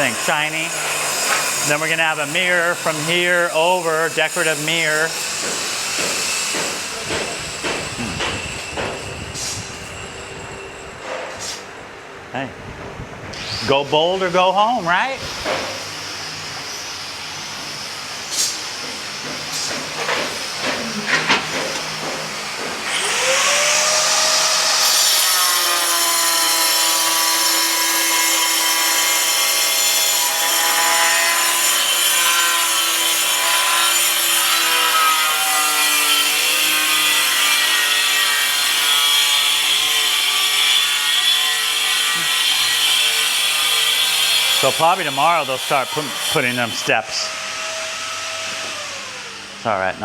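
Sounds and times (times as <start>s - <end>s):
sharp knocks: 5.4s - 9.0s
power tool motor whining: 13.3s - 13.8s, 20.4s - 30.4s.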